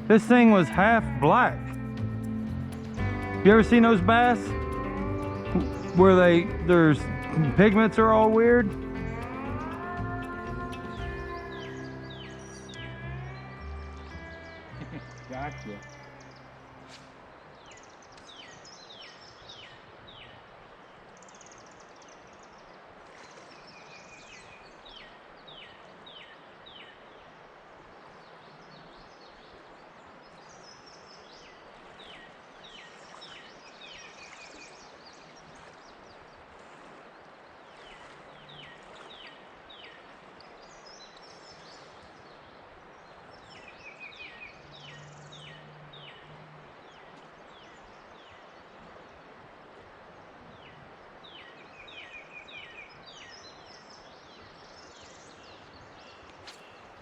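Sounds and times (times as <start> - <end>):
songbird singing high notes: 0.0 - 17.0
flowing creek water: 0.0 - 57.0.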